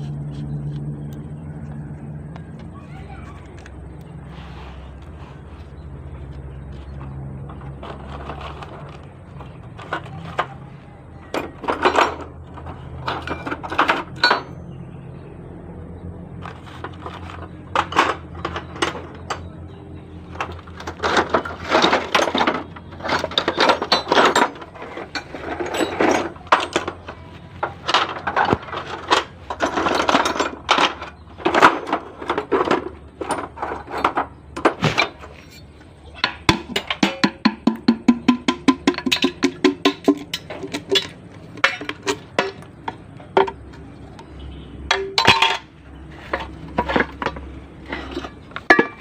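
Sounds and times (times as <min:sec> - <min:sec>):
metal tools clinking: 0:07.4 - 0:14.6, 0:16.4 - 0:19.6, 0:20.2 - 0:37.5, 0:38.1 - 0:43.9, 0:44.9 - 0:49.0.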